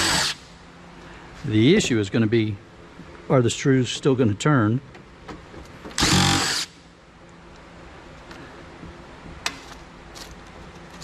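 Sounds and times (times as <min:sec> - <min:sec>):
loud rasping burst: 0:00.0 - 0:00.4, 0:06.0 - 0:06.7.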